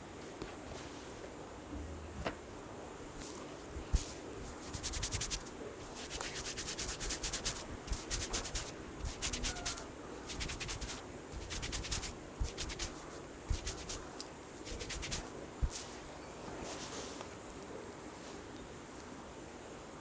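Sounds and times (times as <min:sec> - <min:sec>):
hands rubbing hair: 0:03.2 - 0:17.3.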